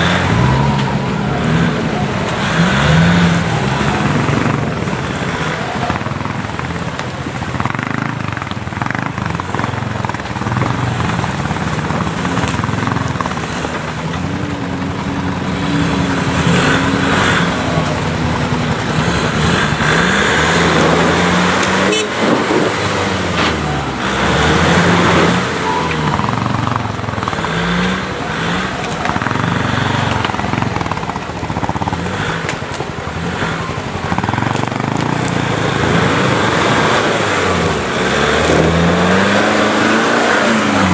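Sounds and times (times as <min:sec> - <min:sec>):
driving noise: 0:00.0 - 0:40.9
off-road engine under load: 0:00.0 - 0:40.9.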